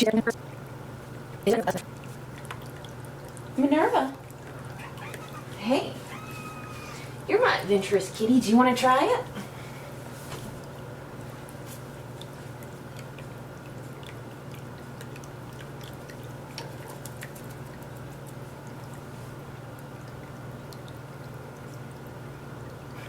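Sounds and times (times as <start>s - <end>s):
low pump hum: 0.0s - 23.0s
water trickling: 0.4s - 23.0s
water drips and splashes: 0.6s - 5.8s, 10.5s - 23.0s.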